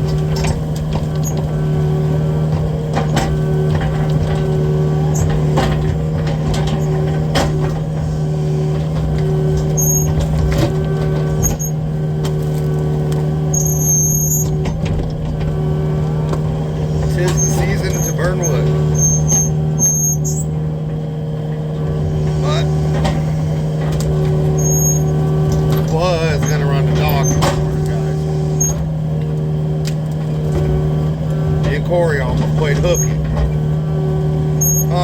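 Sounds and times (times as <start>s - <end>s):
excavator diesel engine running: 0.0s - 35.0s
hydraulic whine: 0.0s - 35.0s
high-pitched squeals: 13.4s - 14.6s, 16.6s - 20.6s, 22.0s - 29.0s, 31.8s - 33.3s, 34.5s - 35.0s.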